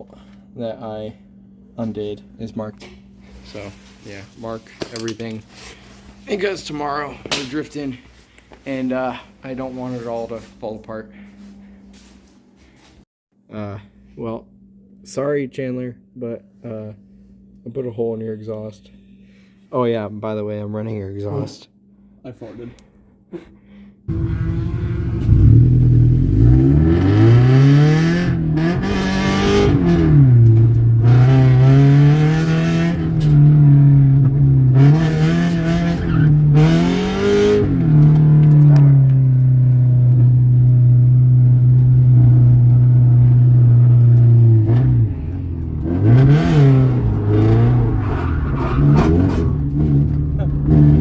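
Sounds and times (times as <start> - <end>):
car engine revving: 24.1 - 51.0.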